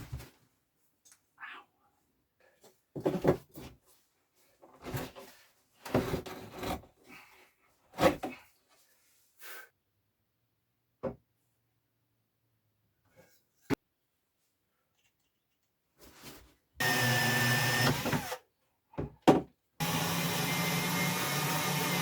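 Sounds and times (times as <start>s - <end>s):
wood knocks and scrapes: 4.8s - 6.9s.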